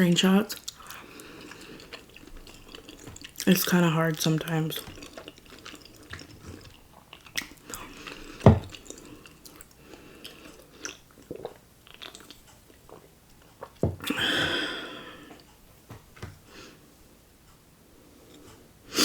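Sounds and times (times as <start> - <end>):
person chewing noodles: 0.5 - 15.6.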